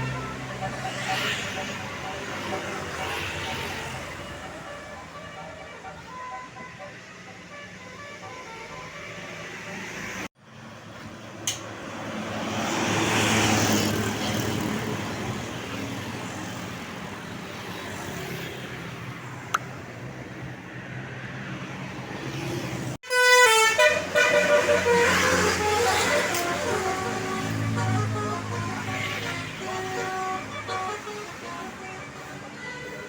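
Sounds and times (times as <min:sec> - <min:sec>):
multi-tone bus horn melody: 0:00.0 - 0:10.3, 0:23.0 - 0:33.0
bus passing: 0:00.0 - 0:33.0.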